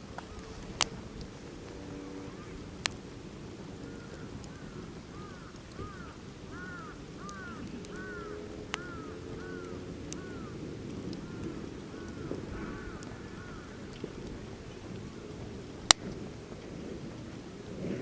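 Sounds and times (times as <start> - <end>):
campfire crackling and popping: 0.0 - 18.0
crow cawing: 2.0 - 2.6, 3.8 - 14.1.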